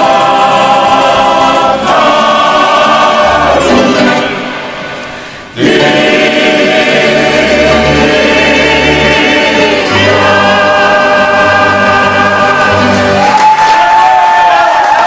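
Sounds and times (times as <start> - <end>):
voices singing in harmony: 0.0 - 15.0
applause: 13.3 - 15.0.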